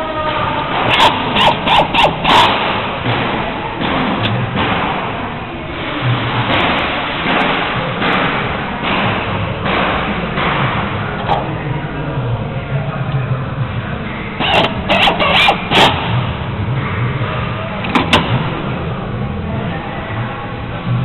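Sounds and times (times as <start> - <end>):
hand tool rasping wood: 0.8 - 2.6, 14.4 - 16.0.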